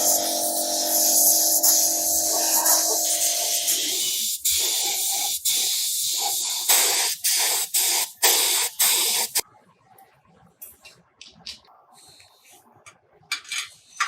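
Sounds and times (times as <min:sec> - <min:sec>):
paint spray hissing: 0:00.0 - 0:09.4.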